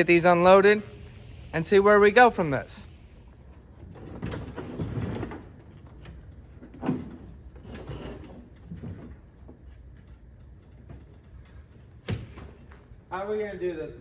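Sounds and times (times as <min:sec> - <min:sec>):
heavy items scraping and rumbling: 0:03.6 - 0:09.7.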